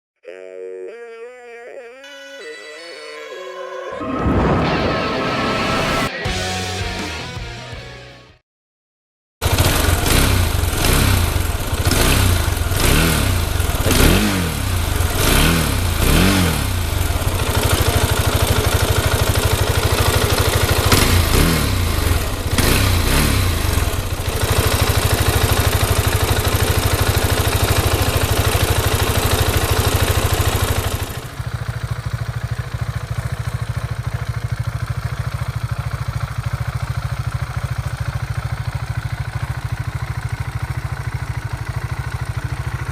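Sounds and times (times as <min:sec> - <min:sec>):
motorcycle engine revving: 0:09.4 - 0:33.8.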